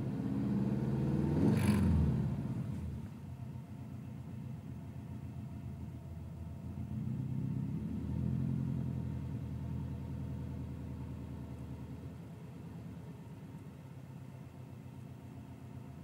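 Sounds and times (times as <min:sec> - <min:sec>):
car engine idling unevenly: 0:02.5 - 0:07.3, 0:09.0 - 0:16.0.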